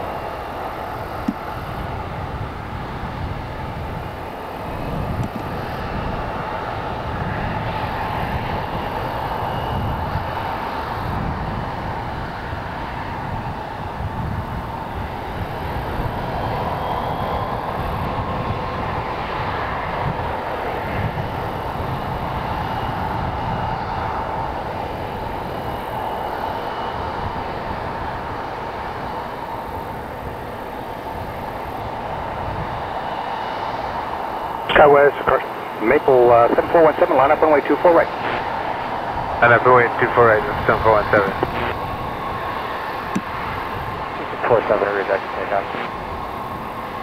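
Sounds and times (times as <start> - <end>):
faint high engine whine: 0.0 - 47.0
jet engines roaring: 0.0 - 47.0.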